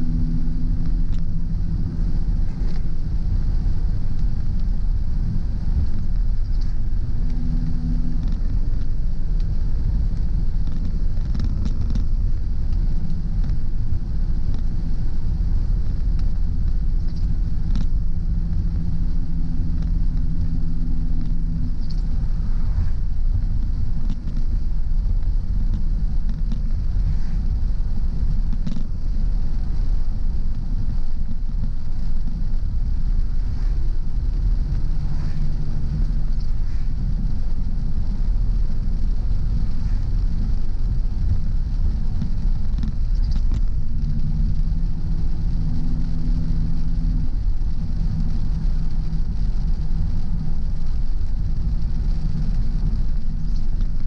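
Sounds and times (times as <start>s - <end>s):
car engine and road rumble: 0.0s - 54.0s
faint ticks: 5.6s - 54.0s
tyres hissing on wet road: 12.1s - 54.0s.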